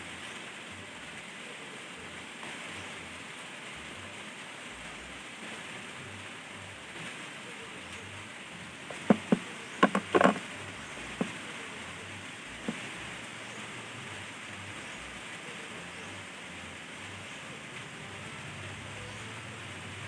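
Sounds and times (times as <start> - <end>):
steady hiss: 0.0 - 20.0
sharp clicks and knocks: 8.9 - 11.4.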